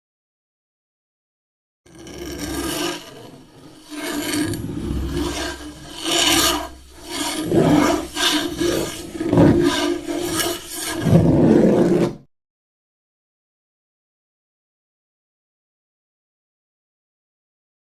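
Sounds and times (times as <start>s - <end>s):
scraping strokes: 1.9s - 12.2s.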